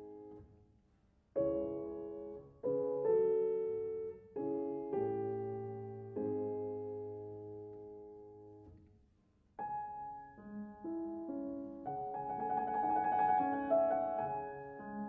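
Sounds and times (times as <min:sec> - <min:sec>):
piano music: 0:09.6 - 0:15.0.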